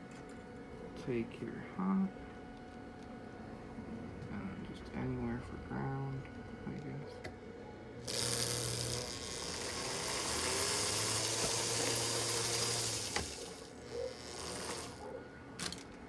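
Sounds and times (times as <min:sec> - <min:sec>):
toy train motor whirring: 0:08.0 - 0:15.9.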